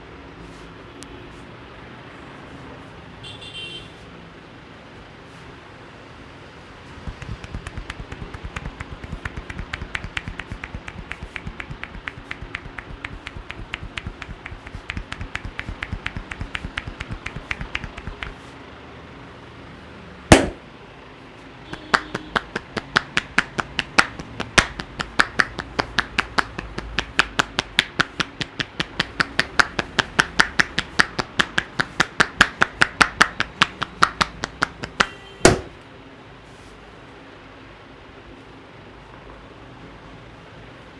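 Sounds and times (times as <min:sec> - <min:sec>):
hands tapping on head: 0:07.0 - 0:18.4, 0:20.3 - 0:20.6, 0:21.7 - 0:35.7
loud hand slap: 0:07.0 - 0:18.4, 0:20.3 - 0:20.6, 0:21.7 - 0:35.8.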